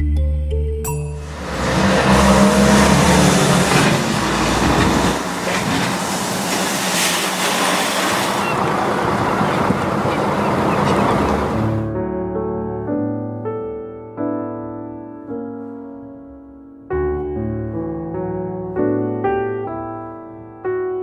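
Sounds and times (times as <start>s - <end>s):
low drone: 1.2s - 11.8s
train wheels rushing on track: 1.2s - 11.8s.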